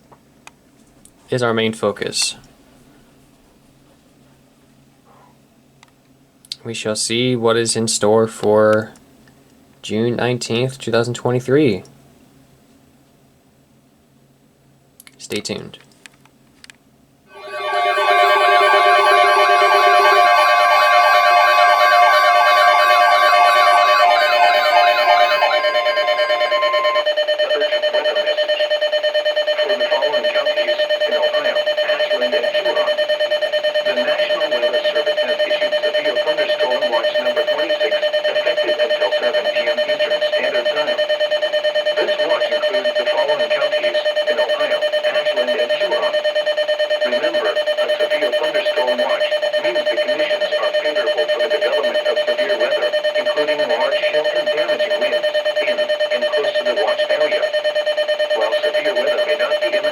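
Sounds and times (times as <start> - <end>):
rapidly pulsing alarm beep: 17.3 - 59.9.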